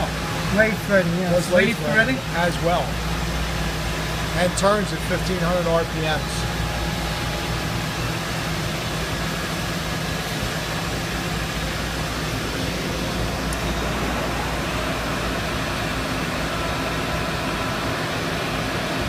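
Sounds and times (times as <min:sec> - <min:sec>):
machine whir and hum: 0:00.0 - 0:19.0.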